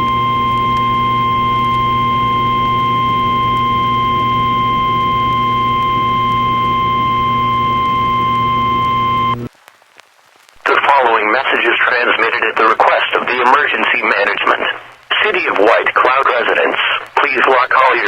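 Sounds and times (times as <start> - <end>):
low electrical hum: 0.0 - 9.5.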